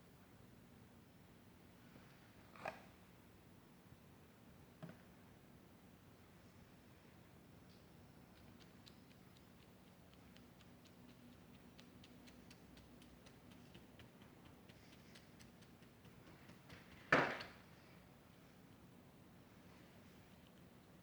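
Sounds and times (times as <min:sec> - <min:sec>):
faint light ticks: 0:07.6 - 0:17.6, 0:19.7 - 0:21.0
loud knock or clatter: 0:16.7 - 0:17.6.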